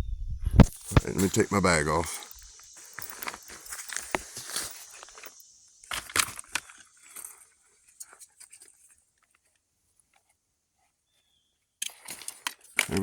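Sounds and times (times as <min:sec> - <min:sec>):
bag rustling: 0:02.2 - 0:05.4.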